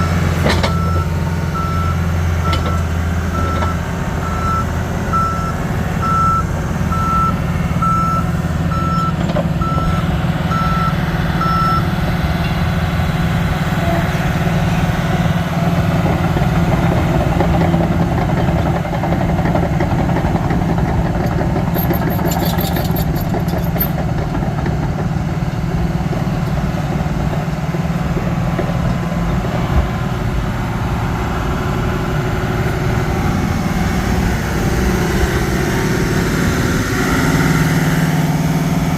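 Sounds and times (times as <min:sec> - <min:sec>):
bulldozer engine running: 0:00.0 - 0:38.9
backup alarm beeping: 0:00.7 - 0:11.9.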